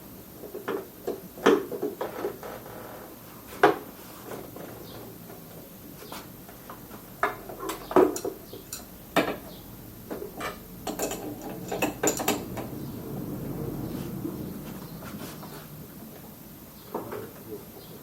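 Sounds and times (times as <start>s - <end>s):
spanner clicking on a nut: 10.9s - 12.7s.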